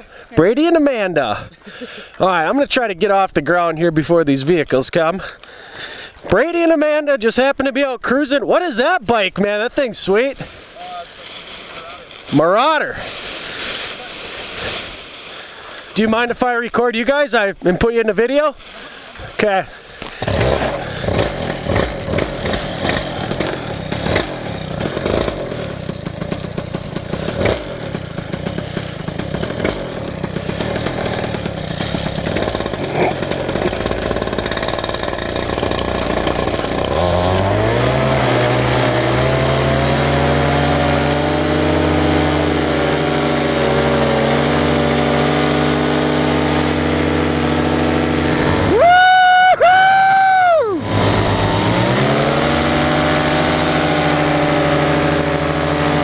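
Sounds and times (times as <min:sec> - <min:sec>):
paramotor engine running: 0:18.6 - 0:56.0.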